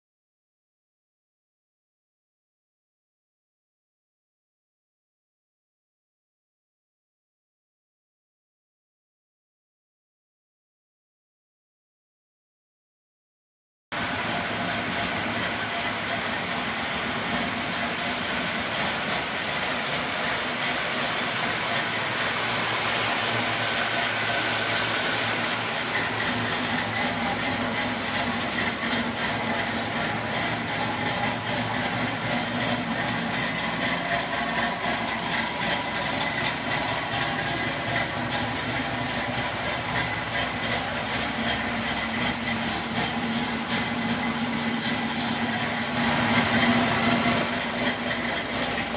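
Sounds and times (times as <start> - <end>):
car engine idling: 13.9 - 48.9.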